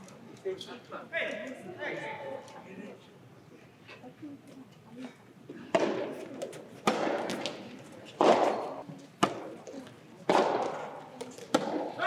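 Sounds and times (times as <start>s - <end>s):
tennis ball struck by rackets: 5.7s - 7.6s, 8.2s - 9.6s, 10.2s - 12.0s.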